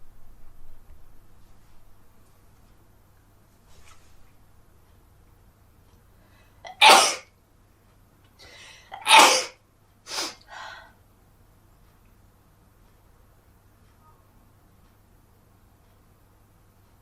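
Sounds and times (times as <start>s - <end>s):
person sneezing: 6.7s - 7.3s, 8.9s - 10.4s.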